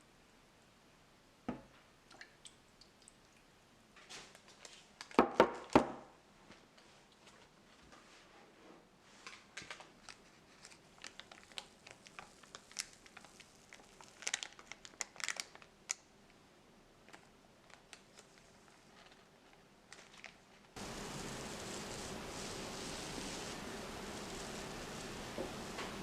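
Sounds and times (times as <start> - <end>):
paper crinkling and rustling: 9.1 - 15.7, 17.1 - 20.8
steady hiss: 20.8 - 26.0.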